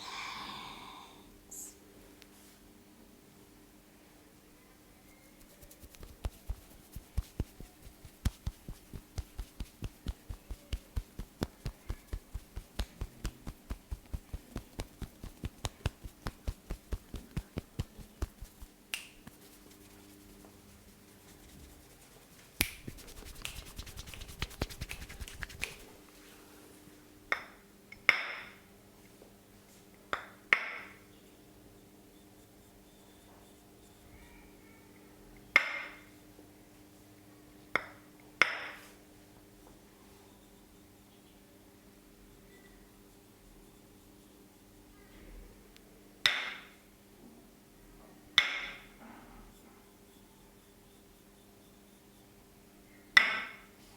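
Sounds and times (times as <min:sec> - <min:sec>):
scratchy flurry: 0:05.3 - 0:26.0
hand strikes of head massage: 0:05.4 - 0:26.0.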